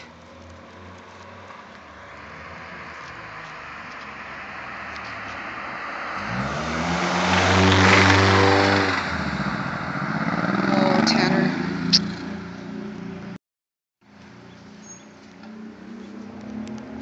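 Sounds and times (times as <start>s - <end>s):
car engine revving: 0.3s - 13.2s.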